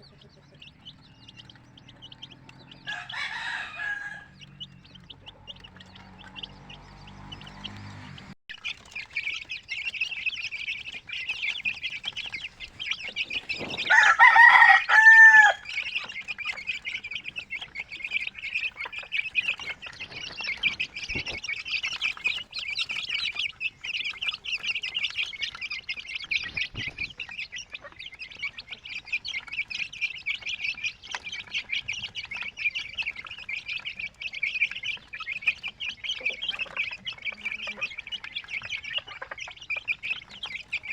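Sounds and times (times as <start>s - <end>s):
chicks peeping: 0.0s - 40.9s
rooster crowing: 2.7s - 4.5s, 13.8s - 15.7s.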